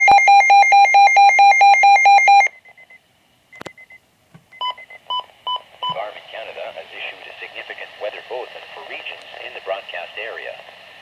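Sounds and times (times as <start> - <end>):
alarm beeping rapidly: 0.0 - 2.5.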